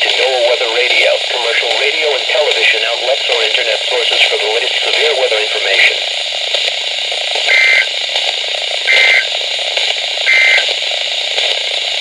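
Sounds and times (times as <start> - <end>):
broadcast reception hiss: 0.0 - 12.0
two-tone data bursts: 7.4 - 7.9, 8.9 - 9.3, 10.3 - 10.7.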